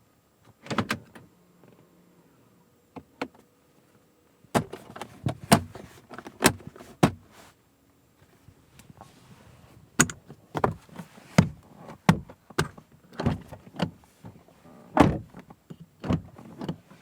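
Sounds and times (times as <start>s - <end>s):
clunks and knocks of car interior: 4.5s - 7.4s, 10.0s - 17.0s.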